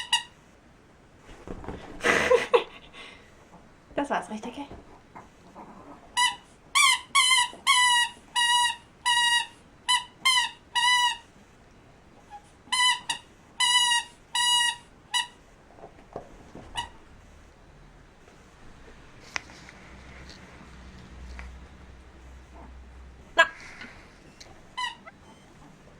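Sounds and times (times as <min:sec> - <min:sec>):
squeaky dog toy squeaking: 0:00.0 - 0:00.4, 0:06.2 - 0:11.2, 0:12.7 - 0:15.4, 0:16.7 - 0:17.0, 0:24.3 - 0:25.8.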